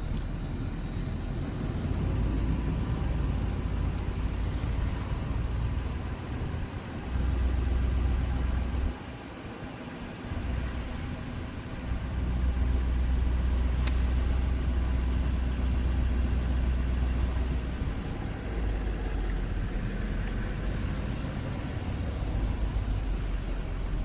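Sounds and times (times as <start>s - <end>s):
car engine and road noise: 0.0s - 24.0s
click: 13.8s - 14.0s.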